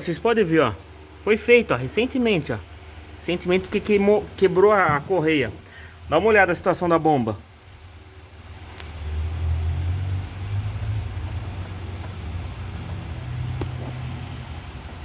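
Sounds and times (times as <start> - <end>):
low uneven engine rumble: 7.8 - 15.0.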